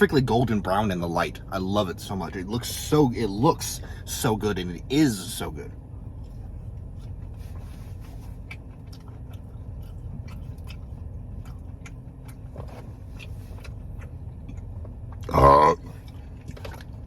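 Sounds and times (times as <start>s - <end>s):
low steady rumble: 0.0s - 17.0s
chewing with wet mouth clicks: 6.2s - 17.0s.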